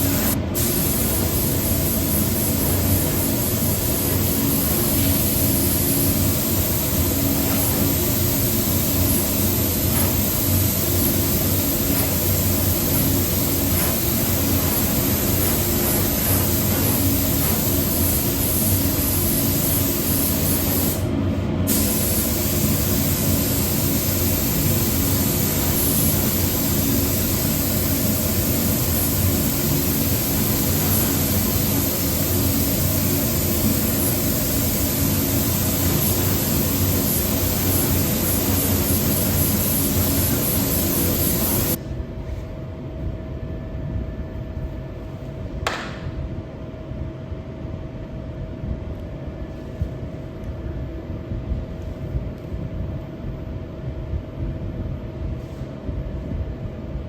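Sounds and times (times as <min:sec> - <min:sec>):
paint spray gun hissing: 0:00.0 - 0:21.1, 0:21.7 - 0:41.8
steady hum: 0:00.0 - 0:54.5.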